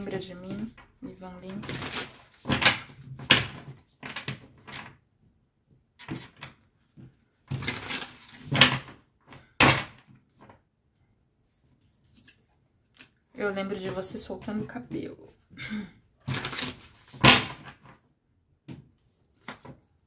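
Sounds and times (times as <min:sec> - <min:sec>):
cards rustling and tapping: 0:00.0 - 0:05.0, 0:06.0 - 0:10.6, 0:16.2 - 0:18.0, 0:18.7 - 0:19.9.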